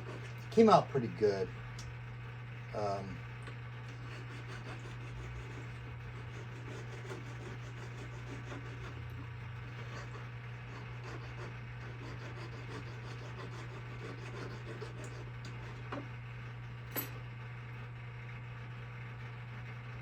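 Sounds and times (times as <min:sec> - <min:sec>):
machine motor hum: 0:00.0 - 0:19.0
light clinks: 0:16.9 - 0:17.2.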